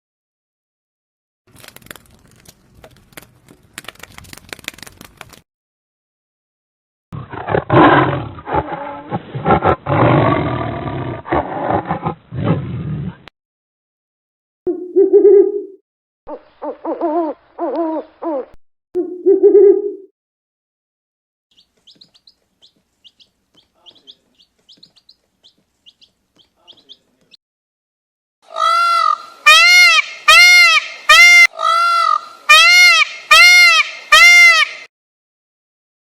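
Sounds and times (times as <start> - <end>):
loud arched repeated calls: 28.5 - 34.9
pitched animal calls: 28.5 - 34.9.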